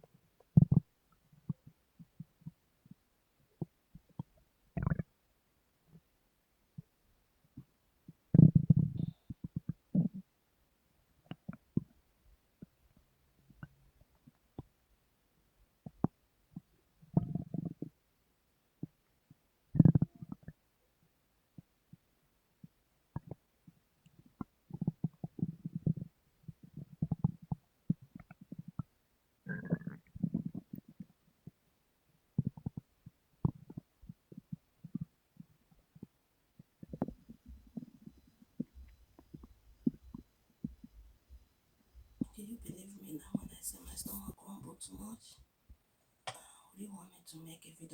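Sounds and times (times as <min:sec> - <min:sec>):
stomach gurgling: 0:00.4 - 0:05.2, 0:07.5 - 0:10.3, 0:11.2 - 0:14.8, 0:15.8 - 0:18.0, 0:18.8 - 0:19.1, 0:19.7 - 0:20.7, 0:21.5 - 0:45.0.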